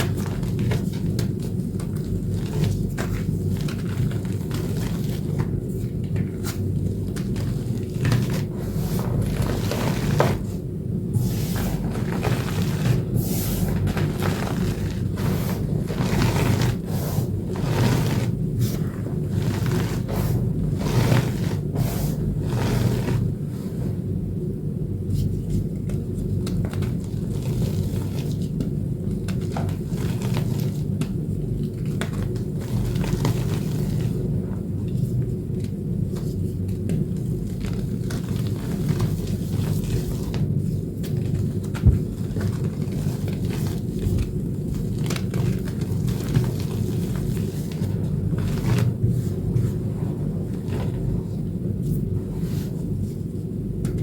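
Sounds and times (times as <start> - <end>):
steady low rumble: 0.0 - 27.2, 30.8 - 54.0
chalk crunching: 11.2 - 23.4.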